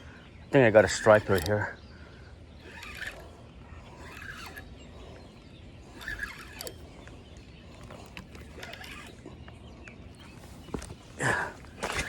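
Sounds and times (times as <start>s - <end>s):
fishing reel cranking: 2.6s - 3.4s, 4.0s - 4.7s, 5.9s - 6.8s, 8.1s - 9.2s.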